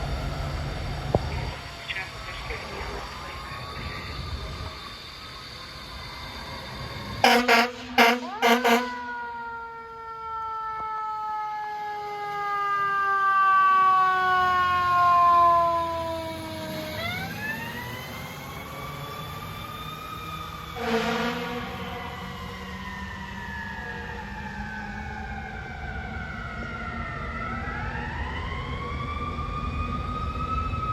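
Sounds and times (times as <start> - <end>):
fire truck siren: 0.0 - 30.9
truck engine rumble: 0.0 - 30.9
air horn blasts: 7.2 - 9.2, 20.8 - 22.4.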